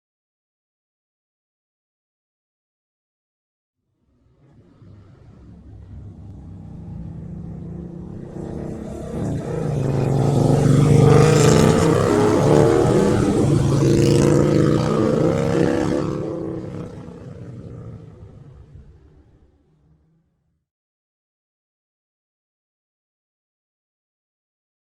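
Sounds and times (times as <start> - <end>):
motorcycle passing by: 4.2 - 20.1.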